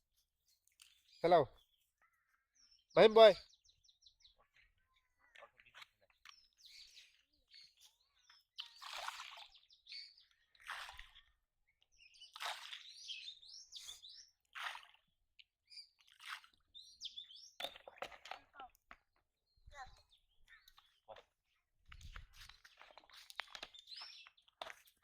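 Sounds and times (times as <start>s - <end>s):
faint birds chirping: 0.4s - 14.4s, 16.7s - 18.7s.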